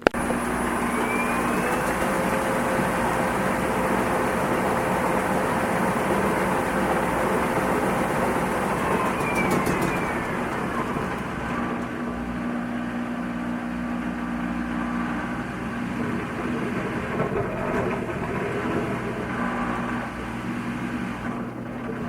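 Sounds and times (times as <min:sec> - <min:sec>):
motor hum: 0:00.0 - 0:22.0
washing machine whirring: 0:00.0 - 0:22.0.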